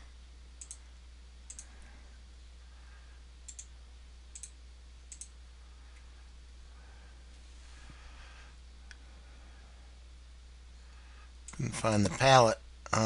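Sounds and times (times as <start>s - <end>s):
steady low hum: 0.0s - 13.0s
mouse buttons clicking: 1.5s - 1.7s.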